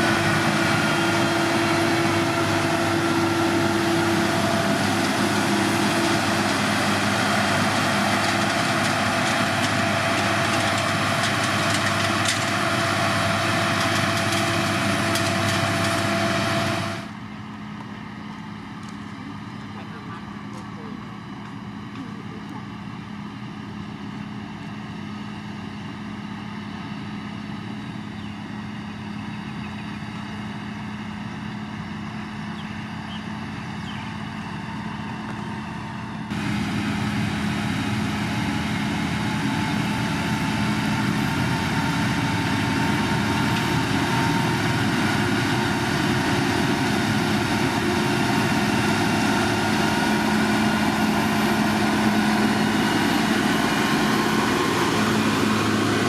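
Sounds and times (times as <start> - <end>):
heavy machinery diesel engine humming: 0.0 - 56.0.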